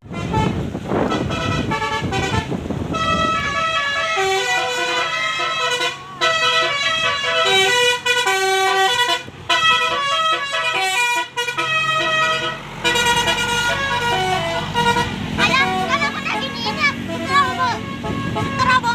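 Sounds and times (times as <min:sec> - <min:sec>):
multi-tone bus horn melody: 0:00.0 - 0:18.9.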